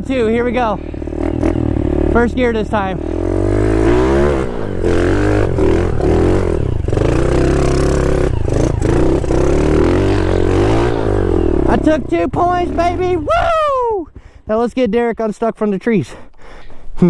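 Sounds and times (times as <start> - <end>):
dirt bike engine revving: 0.0 - 13.5.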